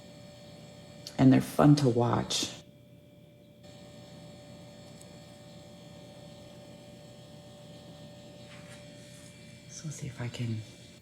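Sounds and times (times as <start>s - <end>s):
faint steady hum: 0.0s - 11.0s
light hiss: 3.6s - 11.0s.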